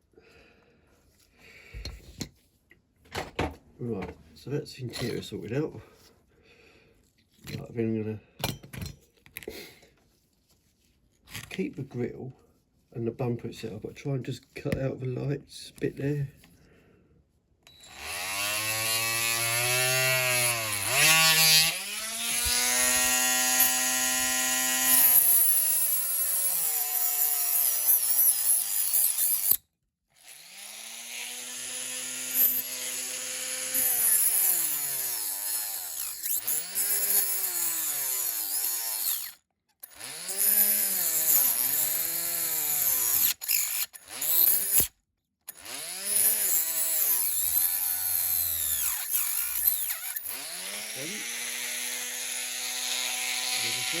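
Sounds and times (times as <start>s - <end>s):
rotary tool whining cutting metal: 17.7s - 29.6s, 30.2s - 44.9s, 45.5s - 54.0s.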